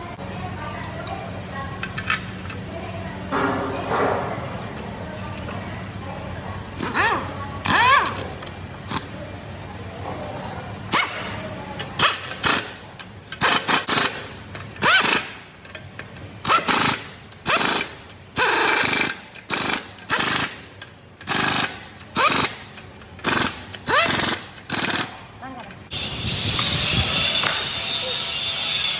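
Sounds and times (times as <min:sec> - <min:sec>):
impact wrench rattling: 0:12.0 - 0:27.6.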